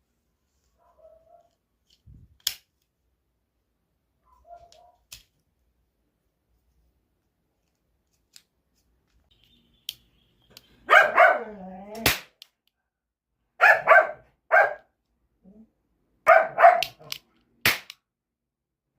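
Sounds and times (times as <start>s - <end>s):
dog barking: 0.8s - 1.6s, 4.2s - 5.1s, 10.8s - 11.7s, 13.6s - 14.9s, 16.2s - 17.1s
dog whining: 11.0s - 12.0s
toy cap gun pops: 12.0s - 12.6s, 16.8s - 18.0s.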